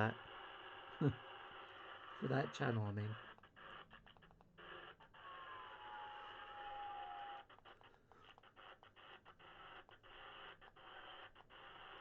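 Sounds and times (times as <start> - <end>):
radio static hiss: 0.0 - 4.0.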